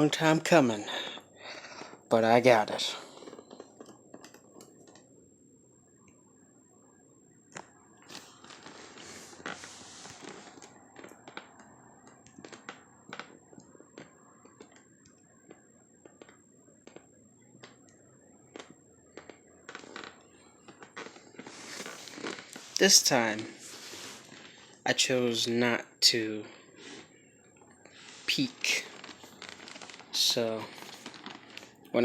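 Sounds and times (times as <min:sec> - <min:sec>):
cardboard rustling: 0:08.1 - 0:14.8, 0:18.6 - 0:24.6, 0:27.9 - 0:31.8.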